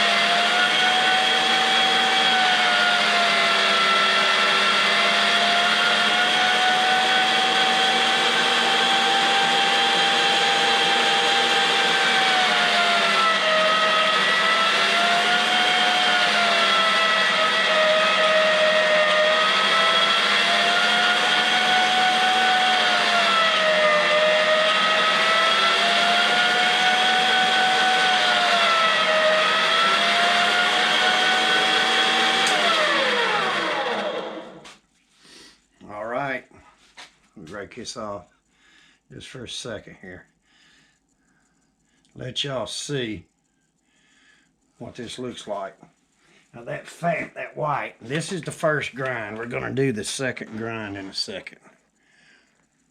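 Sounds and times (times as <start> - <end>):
electric meat grinder motor whine: 0.0 - 34.8.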